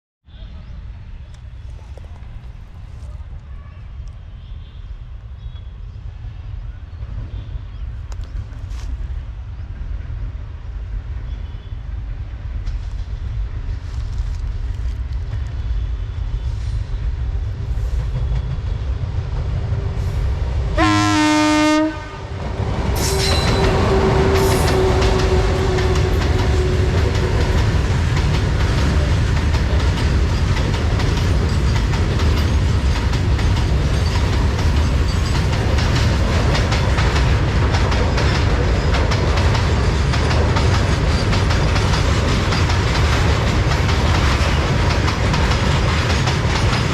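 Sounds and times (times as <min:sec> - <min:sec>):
freight train rumble: 0:00.3 - 0:46.9
locomotive horn blast: 0:20.7 - 0:27.4
wheel clatter over rails: 0:23.2 - 0:46.9.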